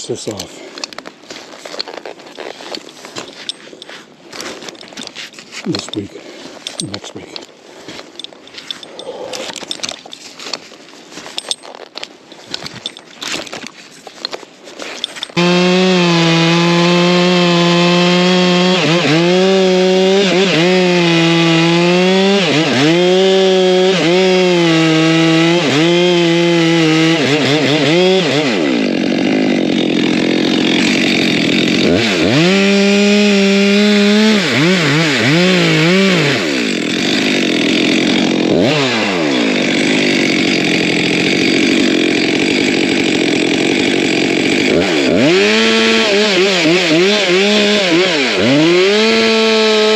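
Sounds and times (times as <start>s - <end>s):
chainsaw cutting wood: 0.0s - 49.9s.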